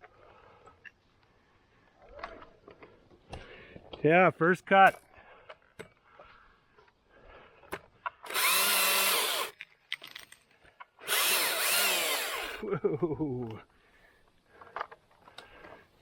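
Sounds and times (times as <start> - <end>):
electric chainsaw whining: 8.2 - 9.6, 11.0 - 12.6.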